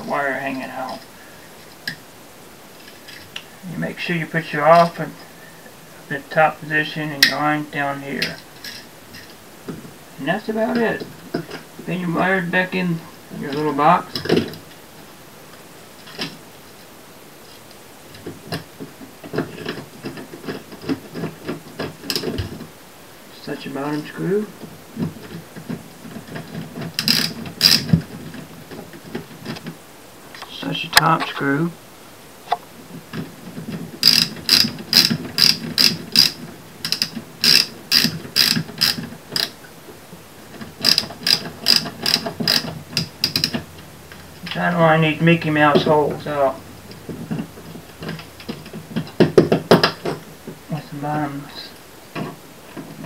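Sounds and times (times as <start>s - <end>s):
ratchet screwdriver clicking: 27.0s - 27.8s, 34.0s - 39.5s, 40.8s - 43.5s.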